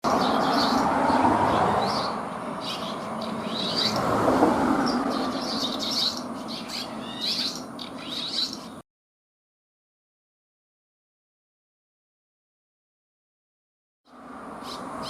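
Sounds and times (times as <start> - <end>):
swallows twittering: 0.0 - 8.8, 14.4 - 15.0.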